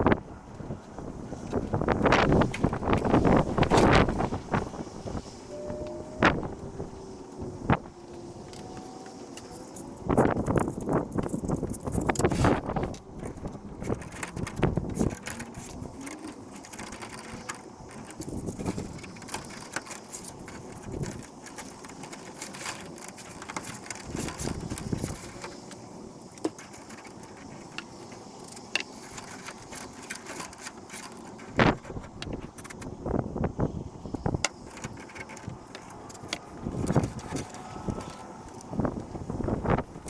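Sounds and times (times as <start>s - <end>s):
small parts being handled: 8.1s - 33.4s, 34.0s - 40.0s.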